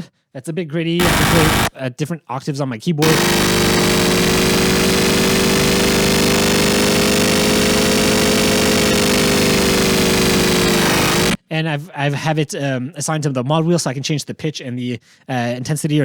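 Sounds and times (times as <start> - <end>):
distorted synth engine drone: 1.0 - 1.7, 3.0 - 11.4.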